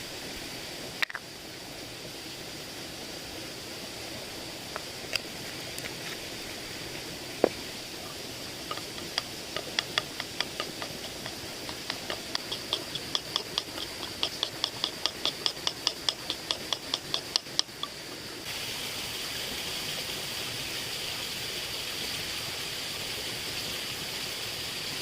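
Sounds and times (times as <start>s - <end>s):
steady background hiss: 0.0s - 25.0s.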